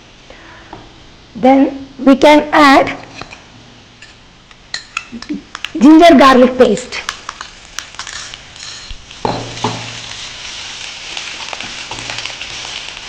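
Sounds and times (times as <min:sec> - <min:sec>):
paste sizzling in hot oil: 0:04.0 - 0:13.0
spoon knocking on pan: 0:09.2 - 0:10.0.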